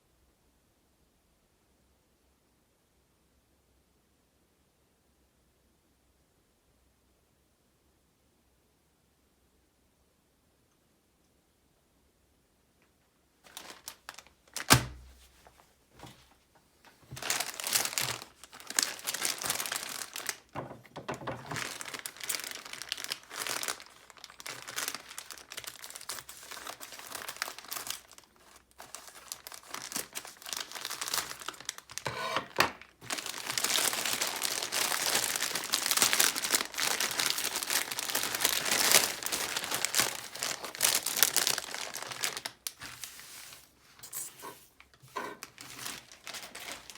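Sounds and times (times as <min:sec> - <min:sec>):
packaging crinkling and tearing: 0:13.5 - 0:15.1, 0:17.1 - 0:46.9.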